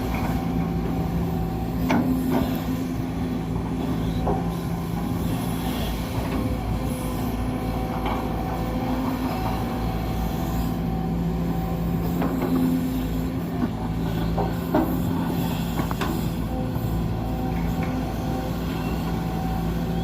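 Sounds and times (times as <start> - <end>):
excavator diesel engine running: 0.0 - 20.0
metallic squeals and clanks: 14.0 - 20.0.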